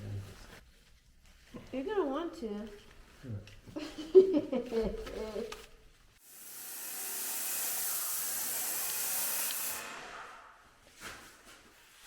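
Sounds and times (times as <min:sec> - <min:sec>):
paint sprayer hissing: 0:06.2 - 0:10.7.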